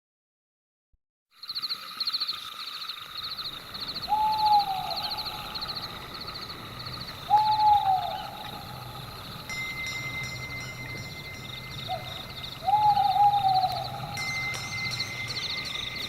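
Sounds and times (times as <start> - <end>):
night insects chirping: 1.3 - 16.0
owl hooting: 4.0 - 9.4, 11.8 - 14.5.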